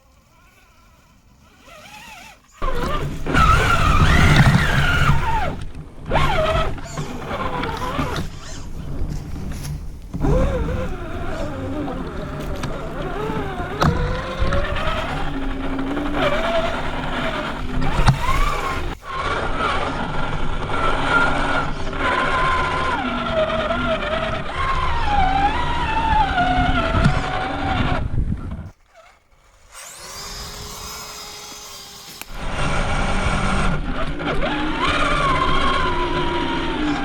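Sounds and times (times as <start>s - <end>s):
rattling crunching over rough ground: 0.0s - 37.0s
toy truck electric motor whining: 0.0s - 37.0s.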